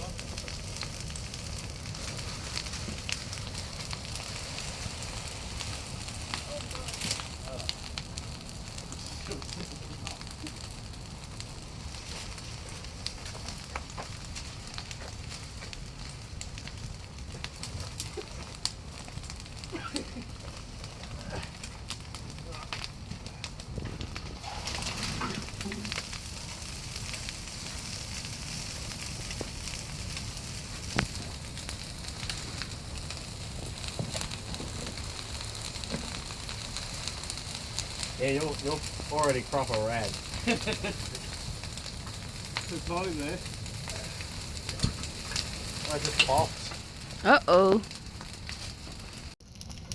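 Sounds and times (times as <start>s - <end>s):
fire crackling and popping: 0.0s - 49.9s
fire rumbling: 0.0s - 49.9s.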